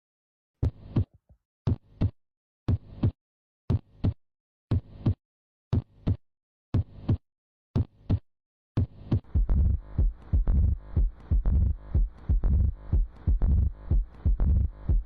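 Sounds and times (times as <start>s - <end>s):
heartbeat lub-dub: 8.8s - 15.0s
systolic heart murmur: 9.1s - 15.0s.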